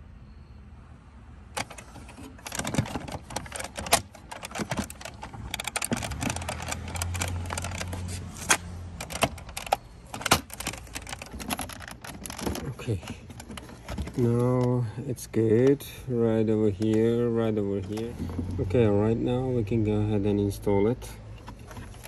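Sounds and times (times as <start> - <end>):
plastic and metal parts clicking: 1.6 - 14.8.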